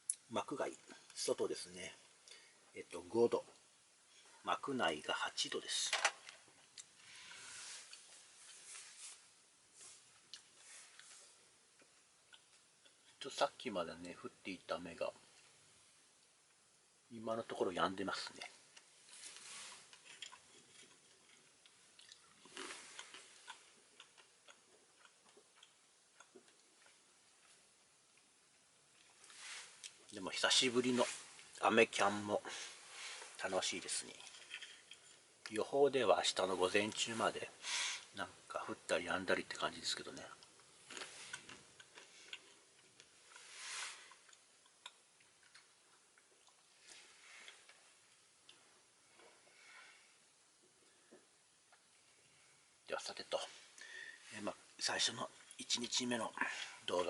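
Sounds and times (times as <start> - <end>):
soft rush of noise: 0.0 - 12.3, 28.5 - 34.2, 42.9 - 44.4
soft rustle: 6.4 - 11.5, 18.0 - 23.8, 28.9 - 38.2, 40.0 - 44.4, 46.6 - 50.2.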